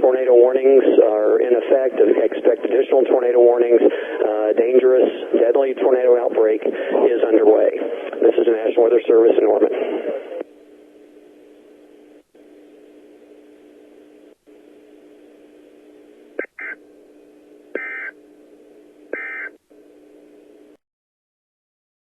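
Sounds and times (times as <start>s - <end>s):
low steady hum: 0.0s - 20.8s
two-tone electronic data screech: 16.4s - 16.8s, 17.8s - 18.1s, 19.2s - 19.5s.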